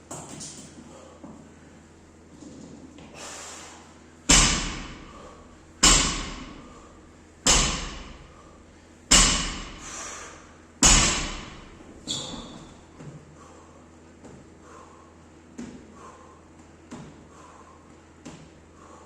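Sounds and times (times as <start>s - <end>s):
barbell thudding on floor: 4.3s - 5.2s, 5.8s - 6.7s, 7.4s - 8.3s, 9.1s - 9.9s, 10.8s - 13.1s.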